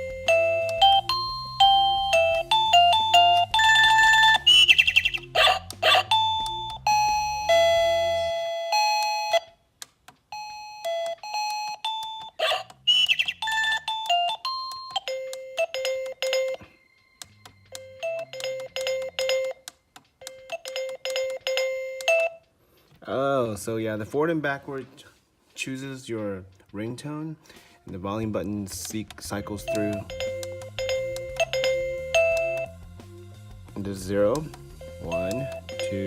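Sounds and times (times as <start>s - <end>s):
electronic doorbell chime melodies: 0.0s - 9.6s, 10.3s - 19.6s, 20.2s - 22.5s, 29.4s - 32.8s, 34.7s - 36.0s.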